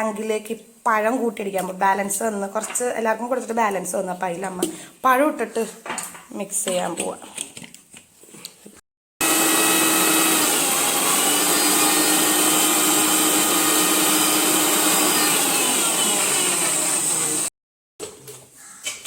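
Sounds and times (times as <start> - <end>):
mixer grinder motor whine: 9.2 - 17.5.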